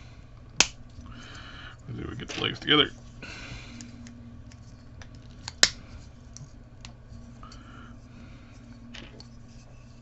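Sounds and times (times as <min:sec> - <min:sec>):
sharp plastic snap: 0:00.6 - 0:00.8.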